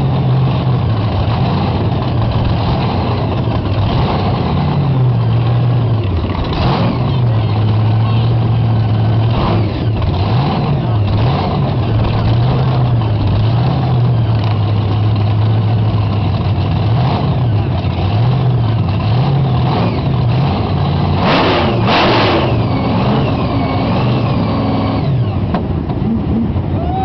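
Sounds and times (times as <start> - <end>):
engine revving: 0.0 - 27.0
loud engine bursts: 16.7 - 25.4.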